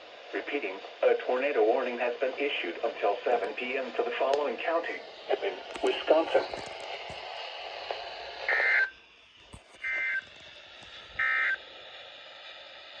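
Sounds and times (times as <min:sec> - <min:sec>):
radio hiss: 0:00.0 - 0:13.0
harsh warbling data tone bursts: 0:08.5 - 0:08.9.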